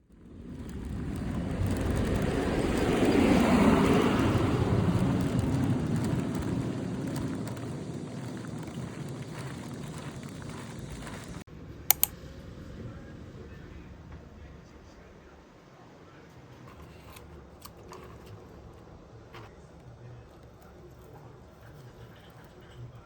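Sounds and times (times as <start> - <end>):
passing vehicle rumbling: 0.2 - 11.4.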